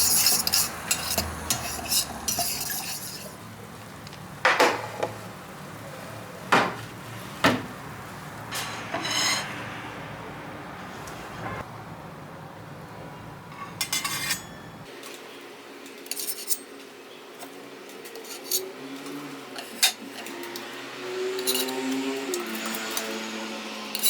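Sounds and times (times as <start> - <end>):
utensils and dishes clinking: 0.0 - 3.4, 8.5 - 10.0, 13.5 - 24.0.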